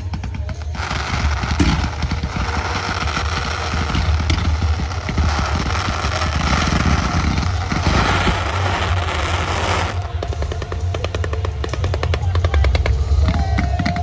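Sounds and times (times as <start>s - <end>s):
fireworks crackling: 0.0s - 12.3s
low rumble: 0.8s - 11.0s.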